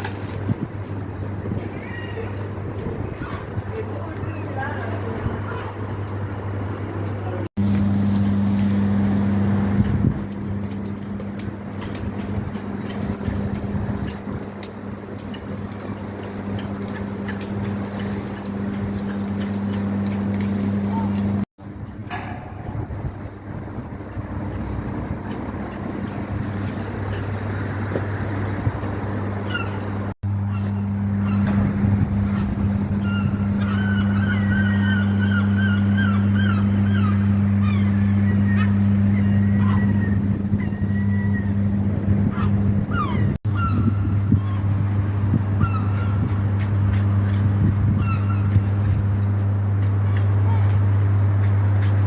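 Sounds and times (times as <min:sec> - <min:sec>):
outdoor street noise: 0:00.0 - 0:52.0
steady low hum: 0:00.0 - 0:52.0
bird calling: 0:15.1 - 0:21.4, 0:29.4 - 0:49.0.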